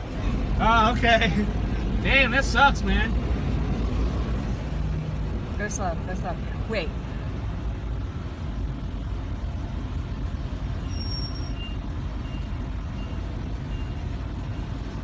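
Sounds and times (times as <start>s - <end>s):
low vehicle rumble: 0.0s - 15.0s.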